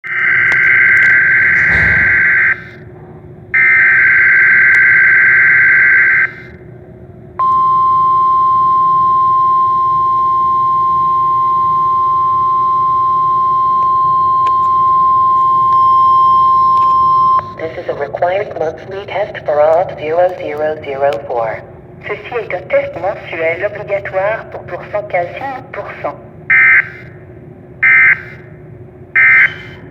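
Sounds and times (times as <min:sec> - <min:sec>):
steady single-pitch tone: 0:07.4 - 0:17.6.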